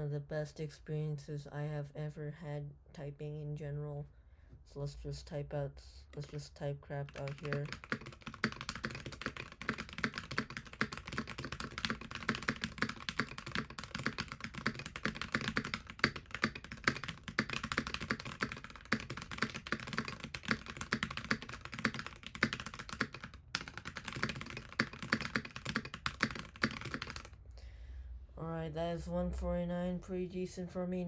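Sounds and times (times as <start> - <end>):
mechanical keyboard typing: 6.2 - 6.4, 7.0 - 27.4.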